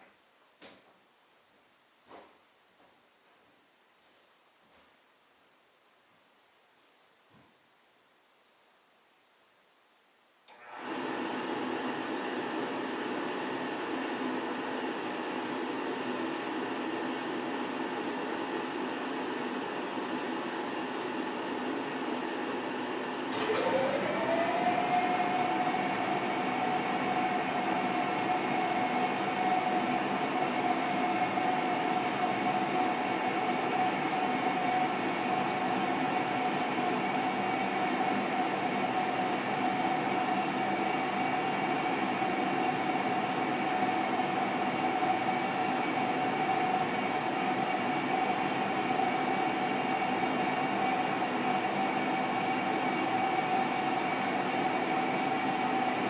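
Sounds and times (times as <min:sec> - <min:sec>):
furnace burner motor whining: 0:10.5 - 0:56.0.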